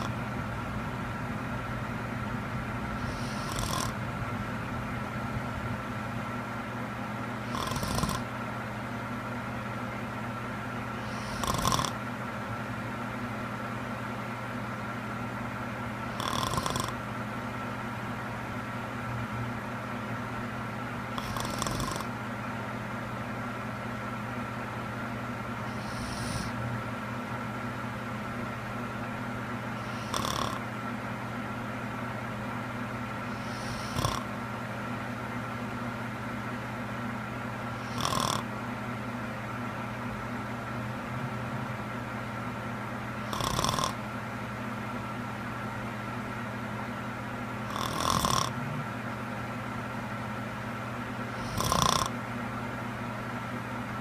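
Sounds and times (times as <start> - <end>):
steady low hum: 0.0 - 54.0
woman snoring: 3.0 - 4.0, 7.4 - 8.3, 11.0 - 12.0, 16.1 - 17.0, 21.2 - 22.1, 25.7 - 26.6, 29.8 - 30.6, 33.3 - 34.3, 37.8 - 38.5, 43.2 - 44.0, 47.7 - 48.9, 51.3 - 52.2.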